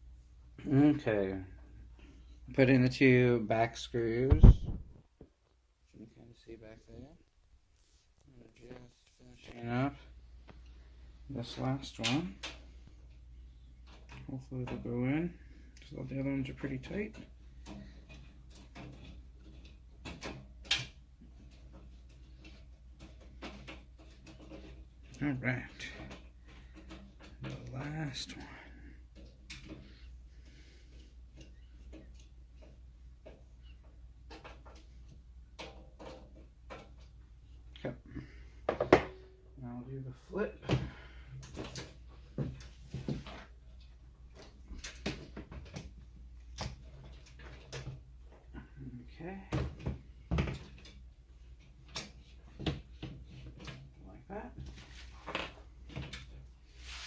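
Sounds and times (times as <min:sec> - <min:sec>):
metal frame knocks and clanks: 0:04.3 - 0:05.0.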